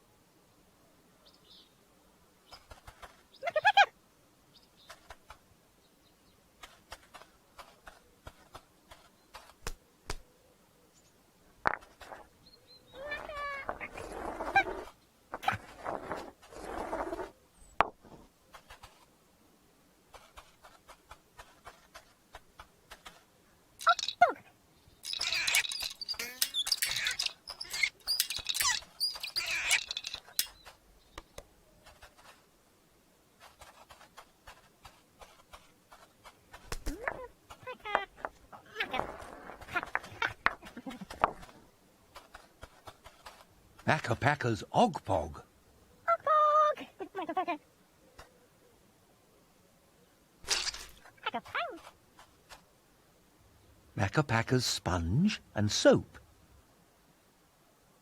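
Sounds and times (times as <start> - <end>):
high-pitched squeaky chirping: 23.8 - 24.3, 25.0 - 30.6.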